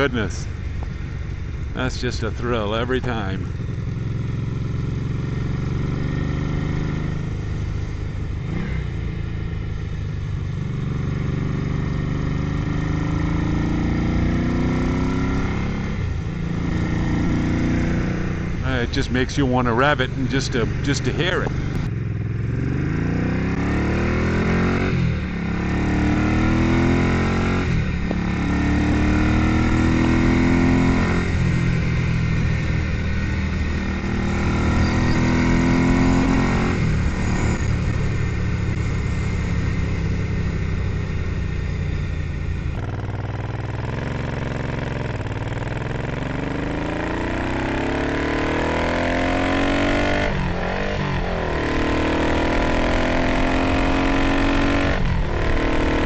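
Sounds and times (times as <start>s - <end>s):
motorcycle engine revving: 0.0s - 56.0s.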